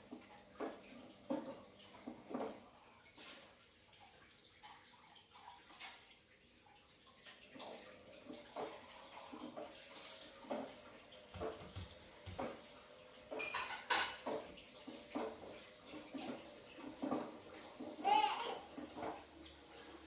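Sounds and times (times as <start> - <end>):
water sloshing in drum: 0.0 - 20.0
washing machine clunks: 11.3 - 12.7.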